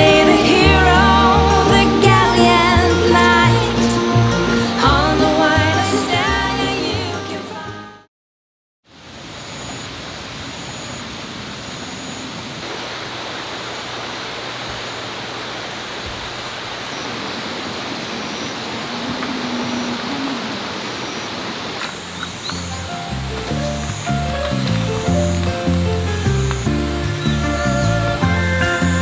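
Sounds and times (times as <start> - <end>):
rushing hiss of outdoor ambience: 8.9 - 29.0.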